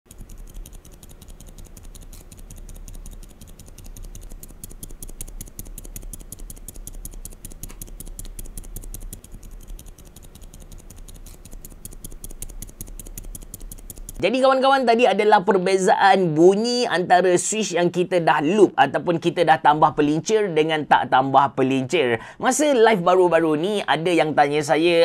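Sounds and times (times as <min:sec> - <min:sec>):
fast mechanical keyboard typing: 0:00.1 - 0:14.2.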